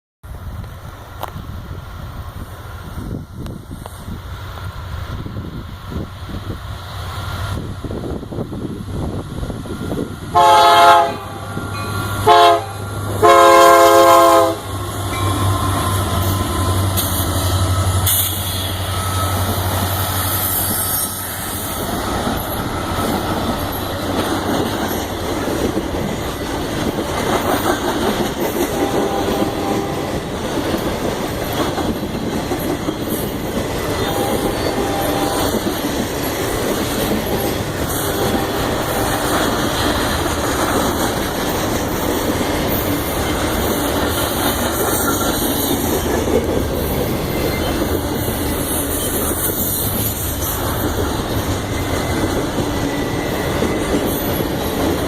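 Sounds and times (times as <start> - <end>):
train wheels clickety-clack: 0.6 - 55.0
locomotive horn chord: 10.3 - 17.0, 28.7 - 30.1, 34.0 - 35.6, 37.2 - 39.2.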